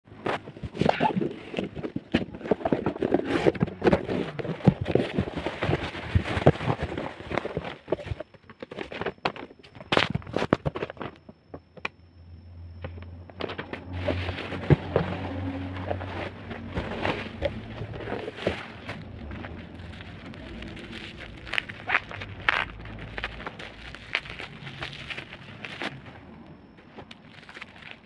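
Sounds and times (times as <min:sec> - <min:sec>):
plastic packaging crinkling: 0:13.6 - 0:28.0.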